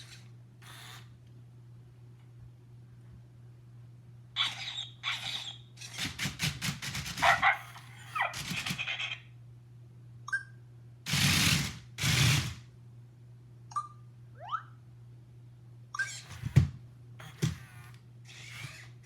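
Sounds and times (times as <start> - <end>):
steady low hum: 0.0 - 19.0
robot dog electronic barks and chirps: 4.4 - 5.6, 7.2 - 9.2.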